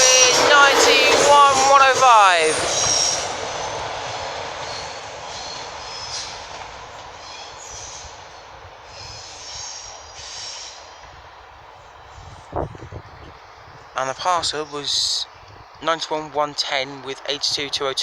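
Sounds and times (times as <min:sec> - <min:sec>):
wheel squeals: 0:00.0 - 0:03.4, 0:04.6 - 0:06.6
train rail and wheel noise: 0:00.0 - 0:18.0.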